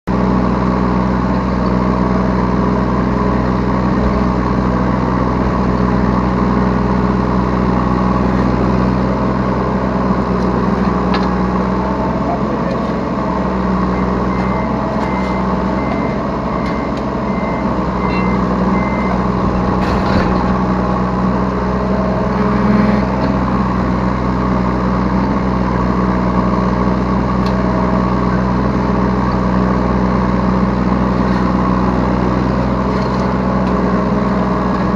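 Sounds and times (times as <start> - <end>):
diesel engine running: 0.0 - 34.9
warning alarm beeps: 13.8 - 20.6.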